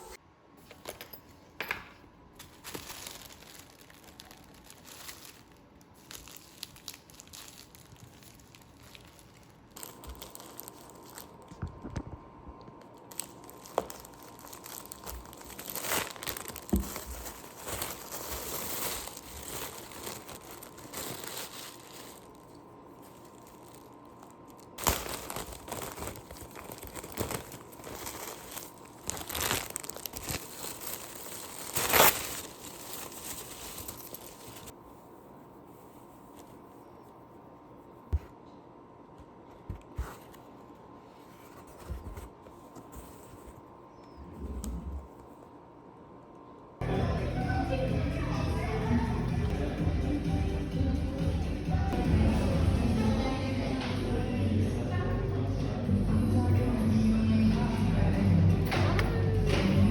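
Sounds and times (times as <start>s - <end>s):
packaging crinkling and rustling: 2.4s - 12.1s, 12.8s - 34.8s.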